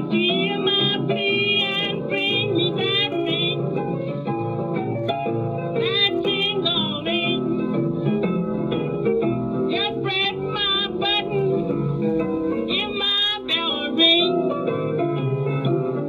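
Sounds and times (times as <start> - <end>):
woman singing blues: 0.0 - 3.6, 5.8 - 7.4, 9.7 - 11.6, 12.7 - 14.5
piano: 0.0 - 16.0.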